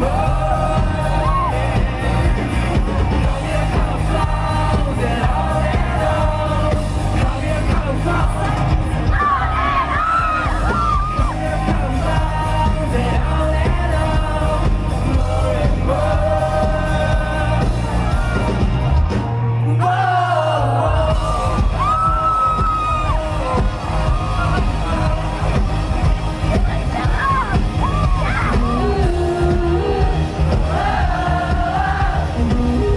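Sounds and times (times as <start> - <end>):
person singing: 0.0 - 18.3, 27.2 - 32.9
live pop-rock band: 0.0 - 32.9.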